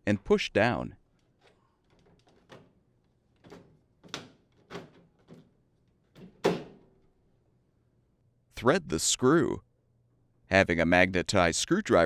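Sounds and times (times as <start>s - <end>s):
plastic parts knocking and clicking: 1.2s - 6.9s.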